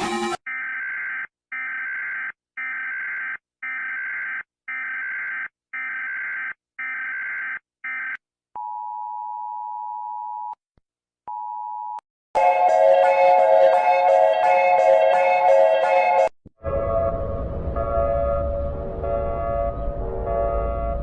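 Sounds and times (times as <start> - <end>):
music: 0.0 - 0.4, 12.4 - 16.3.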